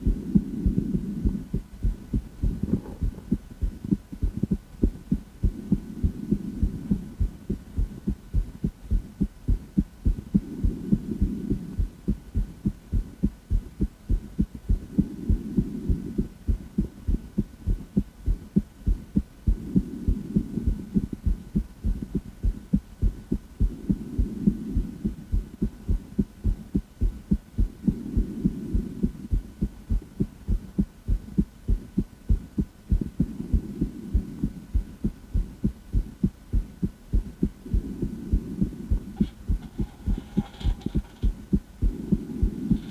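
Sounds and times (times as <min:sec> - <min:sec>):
heart beating: 0:00.0 - 0:42.9.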